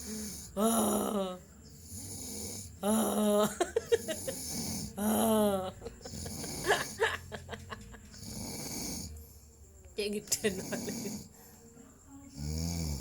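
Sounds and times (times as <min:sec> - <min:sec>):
person snoring: 0:00.0 - 0:07.0, 0:08.2 - 0:09.2, 0:10.6 - 0:11.4, 0:12.3 - 0:13.0.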